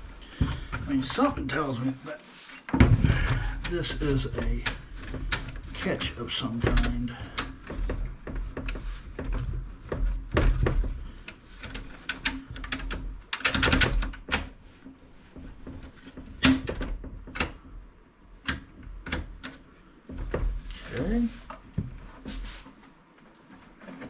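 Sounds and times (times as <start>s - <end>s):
computer case parts clicking and scraping: 2.5s - 17.6s.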